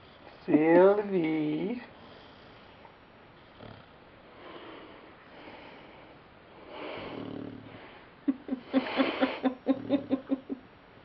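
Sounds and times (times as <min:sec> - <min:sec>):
puppy snoring softly: 0:01.9 - 0:05.8, 0:06.6 - 0:08.1.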